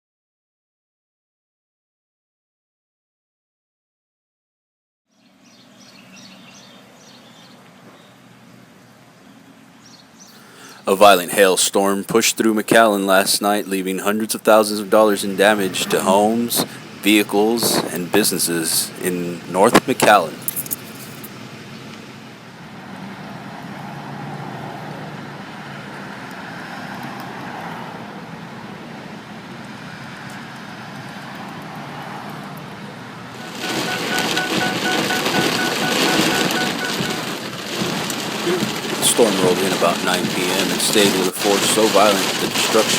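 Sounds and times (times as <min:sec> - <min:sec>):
small birds chirping: 0:05.1 - 0:10.9
vehicles hissing on road: 0:05.3 - 0:42.9
heavy rain hiss: 0:10.2 - 0:21.5, 0:33.3 - 0:42.9.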